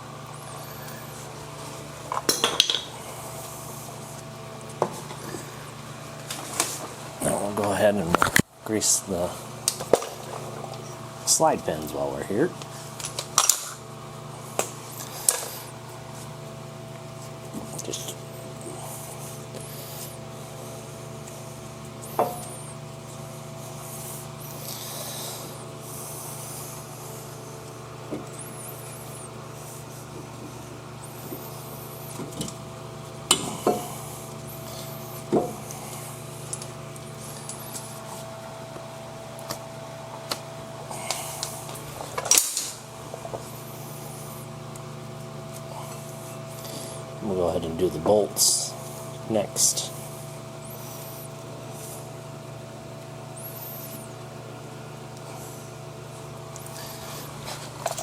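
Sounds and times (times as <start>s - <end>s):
steady hum: 0.0s - 58.0s.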